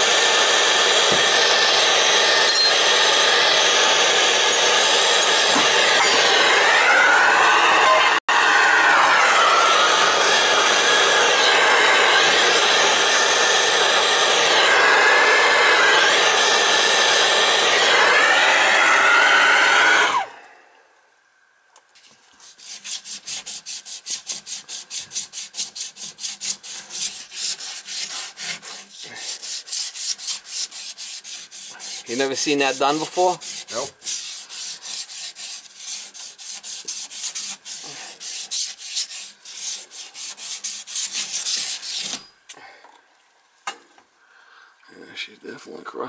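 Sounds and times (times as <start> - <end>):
loud machine noise: 0.0 - 20.4
abrasive cloth rubbing pipe: 22.4 - 42.2.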